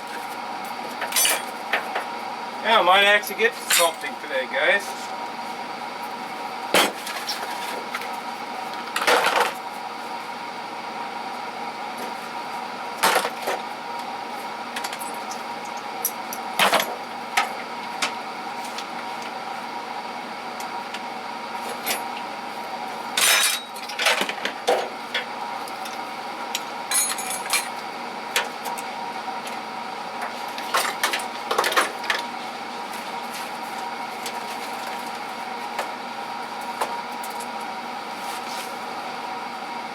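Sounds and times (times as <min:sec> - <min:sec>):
steady background hum: 0:00.0 - 0:39.9
metal tools clinking and clattering: 0:01.0 - 0:01.5, 0:03.7 - 0:04.0, 0:23.2 - 0:24.1, 0:26.9 - 0:27.7.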